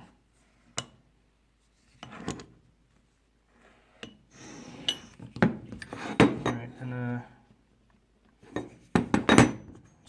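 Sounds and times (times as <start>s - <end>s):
tools knocking and rubbing: 4.0s - 6.7s.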